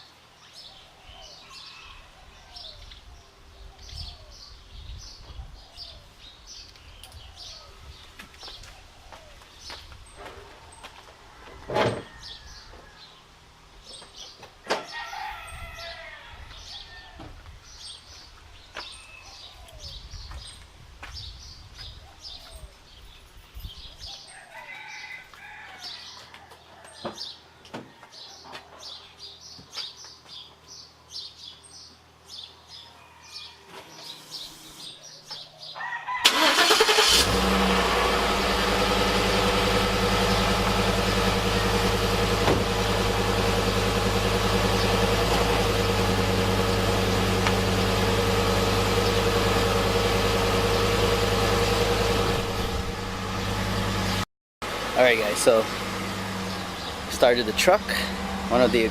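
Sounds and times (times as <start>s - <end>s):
birds chirping: 0.0s - 11.4s, 12.1s - 37.8s, 39.4s - 58.9s
truck engine idling: 36.3s - 58.9s.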